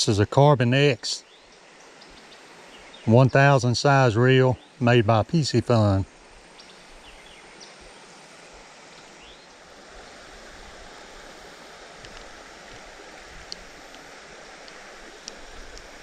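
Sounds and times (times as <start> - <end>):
creek water running: 0.0 - 16.0
faint ticks: 8.9 - 9.1, 12.0 - 16.0.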